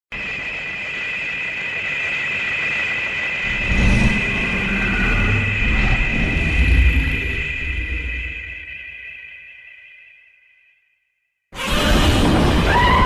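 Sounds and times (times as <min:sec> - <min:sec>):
deep rumble: 0:00.2 - 0:09.2
high two-note whine: 0:03.0 - 0:10.5.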